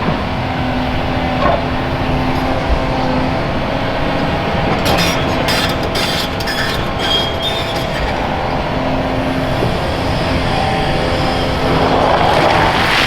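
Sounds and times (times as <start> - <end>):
excavator diesel engine running: 0.0 - 13.0
high metallic squeal: 4.0 - 13.0.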